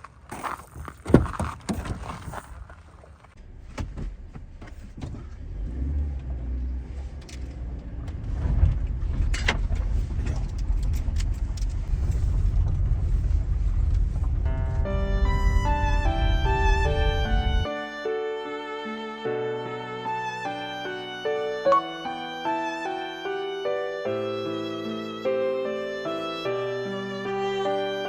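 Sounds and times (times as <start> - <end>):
car engine rumbling: 0.0 - 17.7.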